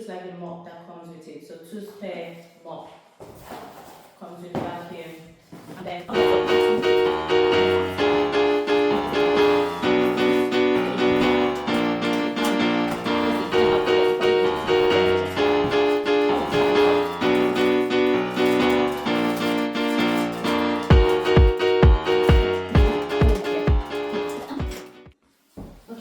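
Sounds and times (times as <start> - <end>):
piano tune: 6.1 - 25.2.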